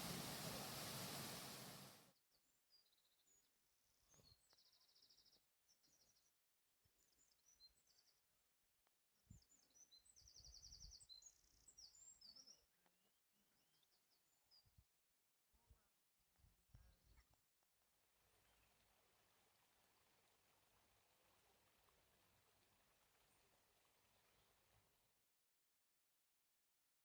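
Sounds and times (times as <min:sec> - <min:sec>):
low rumbles: 0:00.0 - 0:01.9
rushing waterfall: 0:00.0 - 0:02.0.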